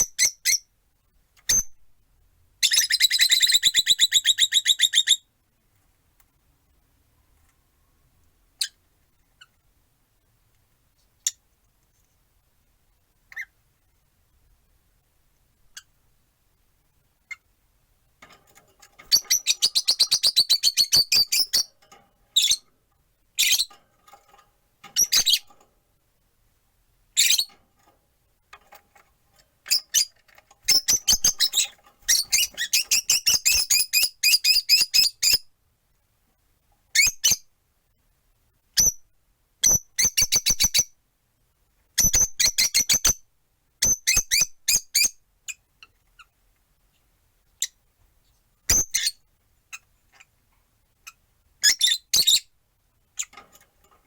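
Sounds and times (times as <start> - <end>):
lovebirds chirping shrilly: 30.7 - 35.3.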